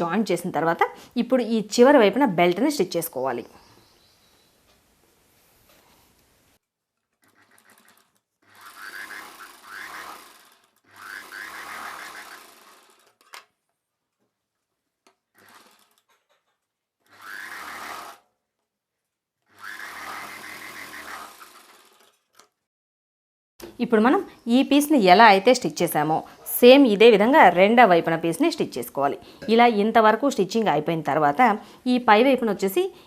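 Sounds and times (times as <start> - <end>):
sewing machine stitching: 7.0 - 13.5, 15.3 - 18.3, 19.5 - 22.5.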